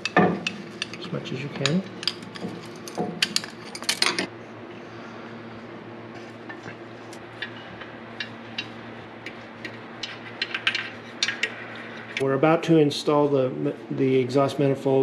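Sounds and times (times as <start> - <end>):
steady low hum: 0.0 - 15.0
small parts clicking and clinking: 1.6 - 4.3.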